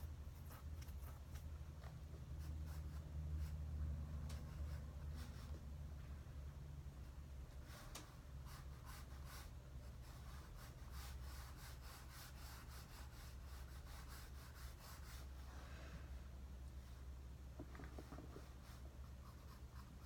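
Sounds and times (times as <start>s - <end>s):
drawing tool scratching on paper: 7.6s - 15.3s.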